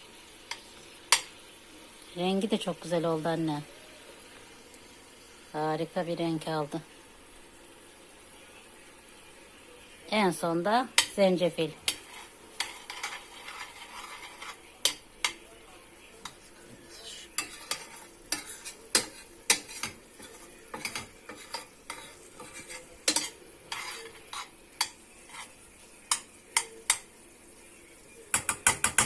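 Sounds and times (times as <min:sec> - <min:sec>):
faint sizzle: 0:00.0 - 0:29.0
spoon scraping a pan: 0:00.5 - 0:01.5, 0:10.9 - 0:15.5, 0:16.2 - 0:27.3, 0:28.3 - 0:29.0.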